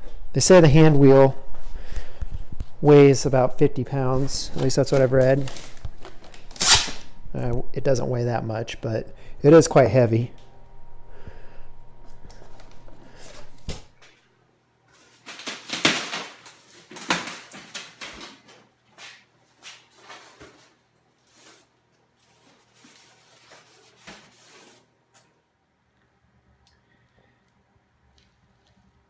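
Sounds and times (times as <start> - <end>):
packaging scraping and rustling: 4.1 - 7.0, 14.9 - 24.9.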